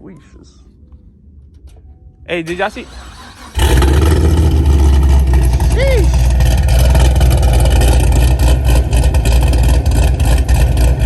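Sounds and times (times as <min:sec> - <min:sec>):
choppy engine revving: 0:02.5 - 0:11.0.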